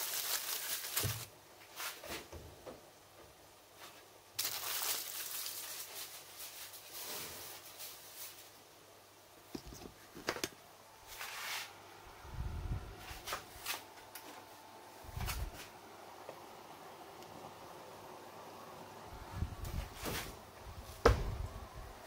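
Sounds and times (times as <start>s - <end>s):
faint steady hum: 0.0s - 22.0s
dull thumps: 21.0s - 21.4s.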